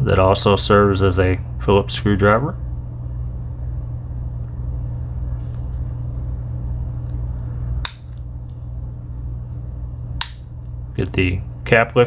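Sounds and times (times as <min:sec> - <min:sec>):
steady low hum: 0:00.0 - 0:12.0
pocket knife snapping shut: 0:07.9 - 0:08.2, 0:10.2 - 0:10.4.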